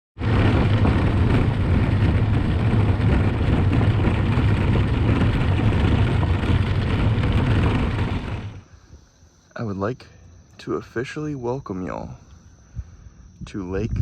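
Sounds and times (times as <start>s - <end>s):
motor vehicle engine rumble: 0.0s - 9.1s.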